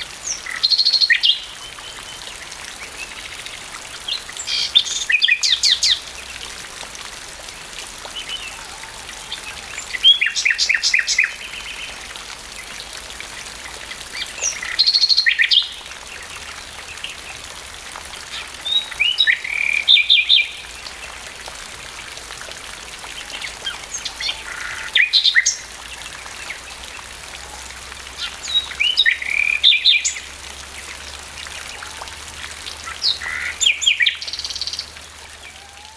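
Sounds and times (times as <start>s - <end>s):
gentle rain hiss: 0.0s - 35.9s
songbird singing: 8.1s - 17.4s, 18.3s - 21.1s, 23.1s - 35.9s.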